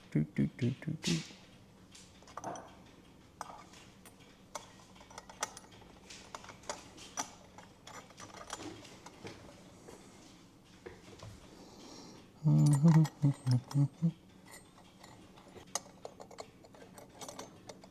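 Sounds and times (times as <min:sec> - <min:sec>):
small metal parts clicking: 0:02.2 - 0:09.2, 0:12.4 - 0:17.9.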